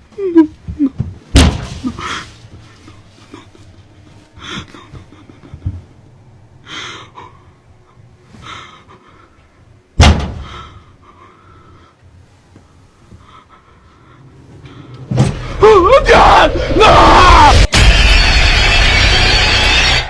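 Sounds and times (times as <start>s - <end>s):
person breathing hard: 3.0s - 5.8s, 6.6s - 9.7s, 10.3s - 15.1s
loud bang: 16.6s - 20.0s.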